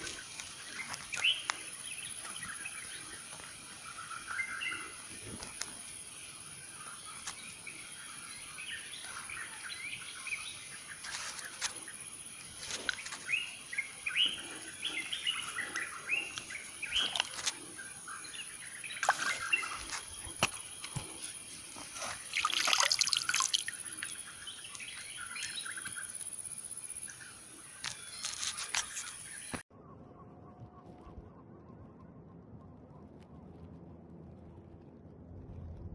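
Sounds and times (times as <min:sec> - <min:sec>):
songbirds chirping: 0:00.0 - 0:29.7
stream water: 0:08.6 - 0:26.0.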